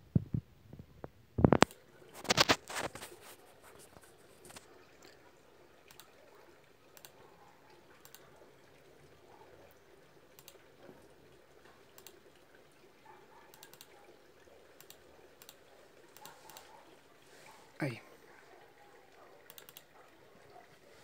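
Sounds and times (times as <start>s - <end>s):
faint sharp clicks: 5.9s - 6.2s, 6.9s - 7.2s, 8.0s - 8.3s, 10.4s - 10.6s, 13.5s - 14.0s, 14.8s - 16.7s, 19.5s - 20.0s.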